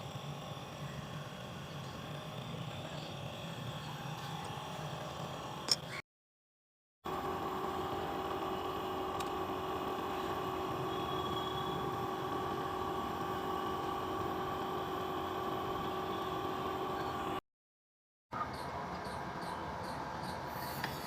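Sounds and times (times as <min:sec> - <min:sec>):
machine motor humming: 0:07.1 - 0:17.4.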